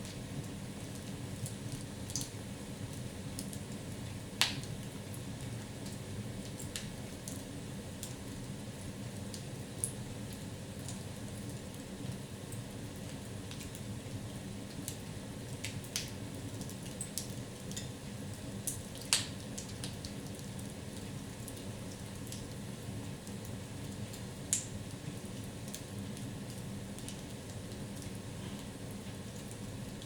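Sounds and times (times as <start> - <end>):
wood fire crackling: 0.0 - 8.6, 14.8 - 30.0
fire pops and snaps: 4.4 - 4.7, 18.7 - 19.9.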